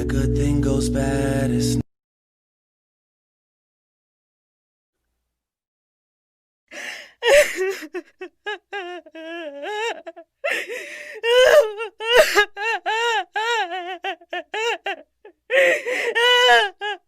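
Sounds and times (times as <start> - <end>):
gasping breaths: 6.7 - 7.7, 10.4 - 11.2, 15.5 - 16.2
person wailing and whimpering: 6.8 - 17.0.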